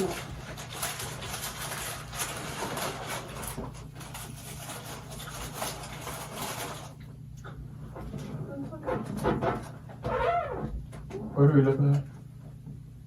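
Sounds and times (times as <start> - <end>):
food wrappers crinkling: 0.0 - 7.0
low steady hum: 0.0 - 13.0.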